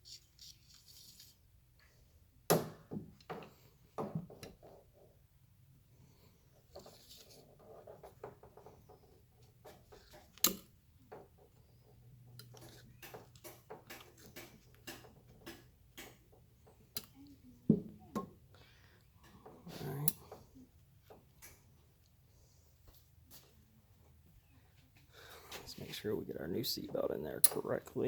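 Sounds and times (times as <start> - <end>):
light clicks and taps of parts: 8.0 - 17.4.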